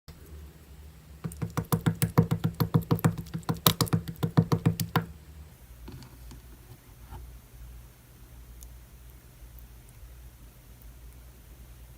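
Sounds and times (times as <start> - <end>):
rapid even knocks: 1.2 - 5.1.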